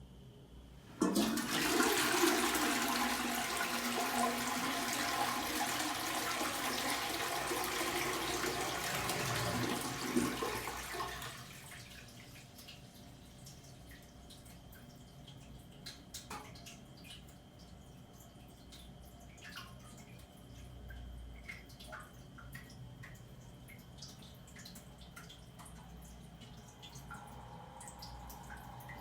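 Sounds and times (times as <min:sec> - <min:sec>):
toilet flushing: 0:00.8 - 0:14.3, 0:26.2 - 0:29.0.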